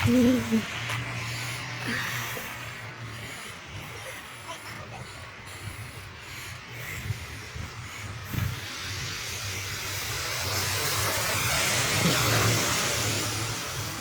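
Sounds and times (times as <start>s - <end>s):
rushing hiss: 6.5s - 14.0s.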